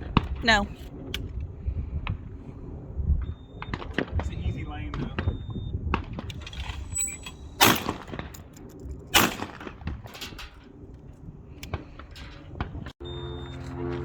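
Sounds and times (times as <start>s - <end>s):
shotgun shots: 7.6s - 8.3s, 9.2s - 10.0s.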